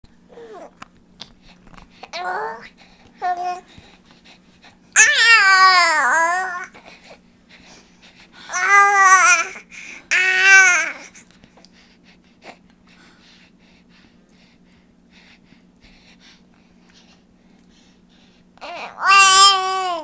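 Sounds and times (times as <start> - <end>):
infant vocalizing: 0.3 - 0.8, 2.1 - 3.6, 5.0 - 6.8, 8.5 - 11.2, 18.6 - 20.0.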